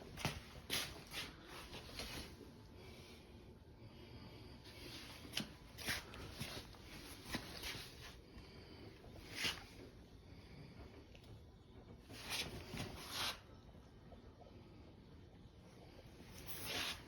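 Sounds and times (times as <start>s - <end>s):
soft footstep scuffs: 0.1s - 2.4s, 4.9s - 8.2s.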